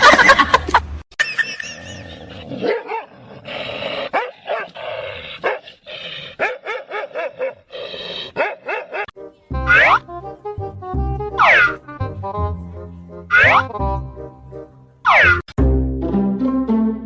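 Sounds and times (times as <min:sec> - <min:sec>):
dog barking: 0:02.6 - 0:03.1, 0:04.1 - 0:04.8, 0:05.4 - 0:05.6, 0:06.4 - 0:07.7, 0:08.4 - 0:09.1, 0:11.4 - 0:11.8, 0:13.3 - 0:13.6.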